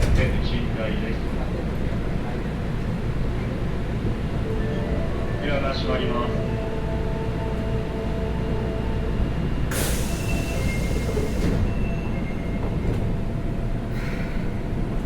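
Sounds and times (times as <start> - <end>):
low train rumble: 0.0 - 15.0
air hiss of train doors: 9.7 - 11.8.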